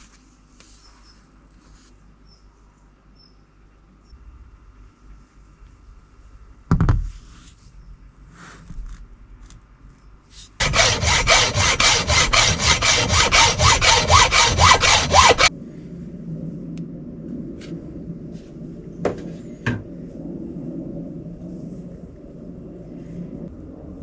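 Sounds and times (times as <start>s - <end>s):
hand tool rubbing a workpiece: 10.6s - 15.5s.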